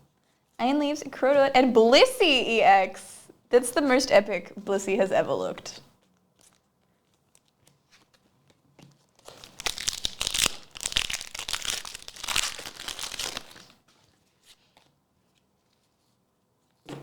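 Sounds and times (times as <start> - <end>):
foil wrapper tearing and crinkling: 8.9 - 13.9.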